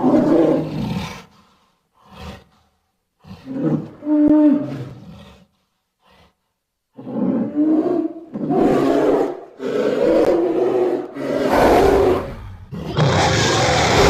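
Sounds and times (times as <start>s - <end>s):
creature growling roars: 7.1s - 14.0s.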